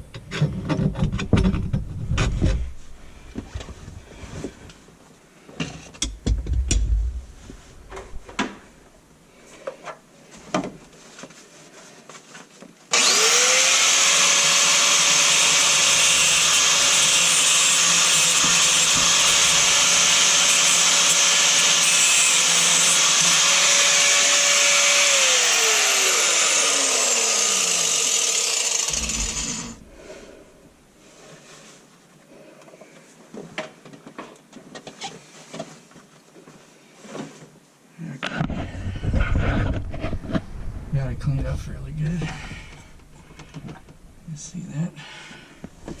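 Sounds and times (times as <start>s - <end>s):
power grinder grinding: 12.9s - 30.4s.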